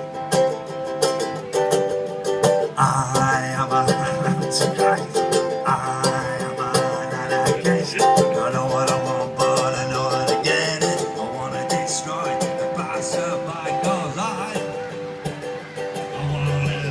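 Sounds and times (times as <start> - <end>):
ukulele strumming: 0.0 - 16.9
man singing: 2.8 - 15.2, 16.0 - 16.9.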